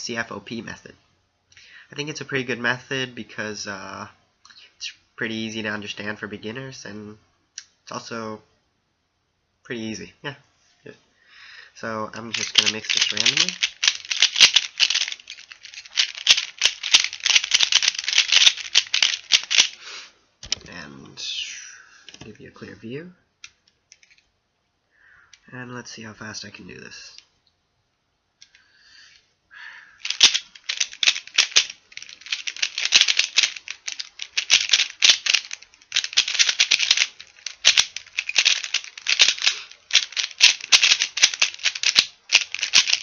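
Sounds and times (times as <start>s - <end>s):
puzzle cube clicking and rattling: 12.3s - 19.8s, 30.0s - 43.0s.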